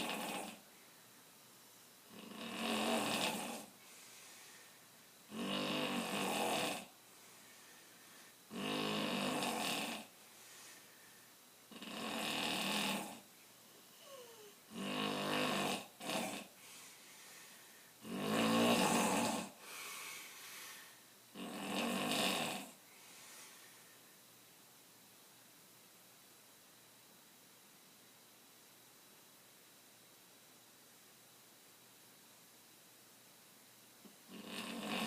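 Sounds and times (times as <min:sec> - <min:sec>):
man snoring: 0:00.0 - 0:00.6, 0:02.1 - 0:03.8, 0:05.3 - 0:06.9, 0:08.5 - 0:10.1, 0:11.7 - 0:13.3, 0:13.9 - 0:16.6, 0:18.0 - 0:22.8, 0:34.2 - 0:35.0
quiet breathing: 0:00.0 - 0:02.0, 0:03.1 - 0:05.3, 0:06.4 - 0:08.6, 0:09.5 - 0:11.8, 0:12.6 - 0:14.8, 0:15.9 - 0:18.1, 0:18.8 - 0:21.2, 0:22.6 - 0:24.4.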